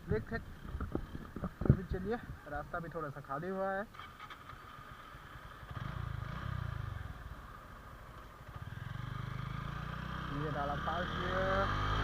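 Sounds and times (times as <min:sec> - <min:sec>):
motorcycle engine revving: 0:03.9 - 0:12.0.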